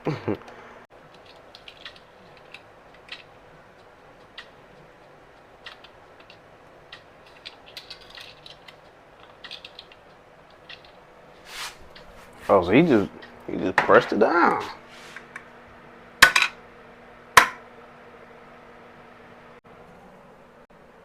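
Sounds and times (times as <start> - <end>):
small hard parts clicking: 1.0 - 11.0.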